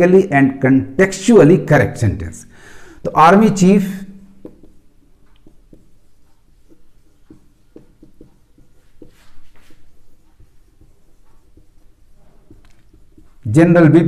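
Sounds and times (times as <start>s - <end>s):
pen scratching on paper: 4.4s - 14.0s.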